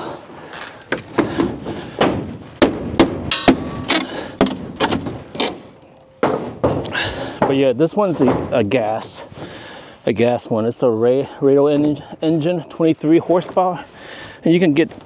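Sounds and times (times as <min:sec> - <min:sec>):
wooden boards knocking: 0:00.9 - 0:05.6, 0:06.2 - 0:08.7.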